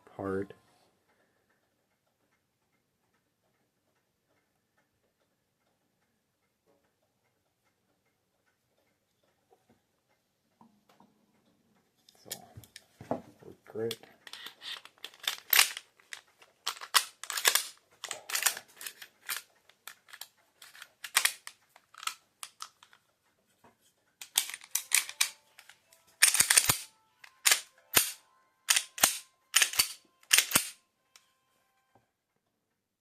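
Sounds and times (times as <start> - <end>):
plastic and metal parts clicking: 13.7 - 23.1, 24.2 - 30.8.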